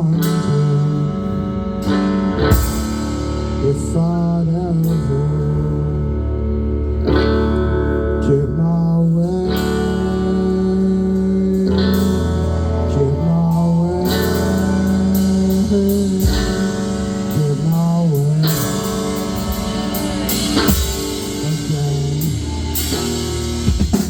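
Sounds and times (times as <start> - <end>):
electric guitar: 0.0 - 24.0
drum kit: 1.2 - 5.2, 11.4 - 24.0.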